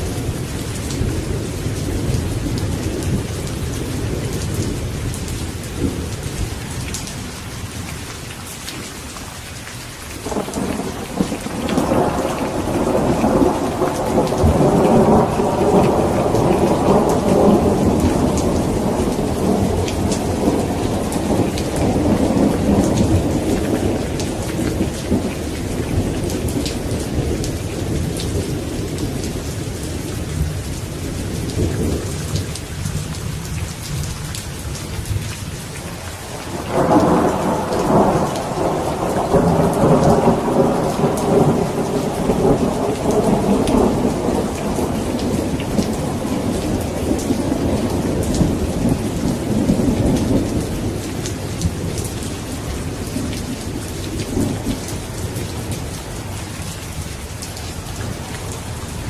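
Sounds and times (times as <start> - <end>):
steady rain: 0.0 - 59.0
rolling thunder: 10.2 - 33.1, 36.2 - 56.0.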